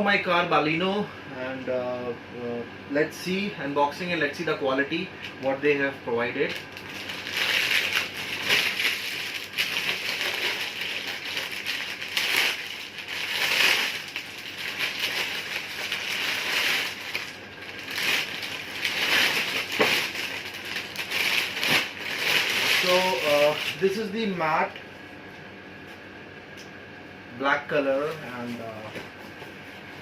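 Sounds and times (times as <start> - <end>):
packaging crackling and rustling: 6.5 - 24.0.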